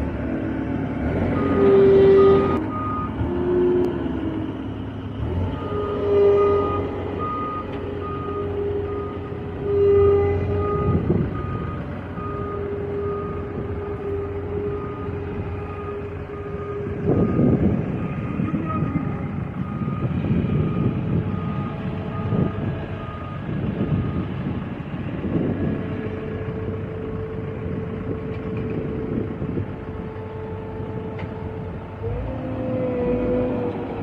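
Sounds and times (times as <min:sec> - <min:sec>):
diesel engine running under load: 0:00.0 - 0:34.0
reversing alarm beeping: 0:01.3 - 0:03.8, 0:05.5 - 0:24.6.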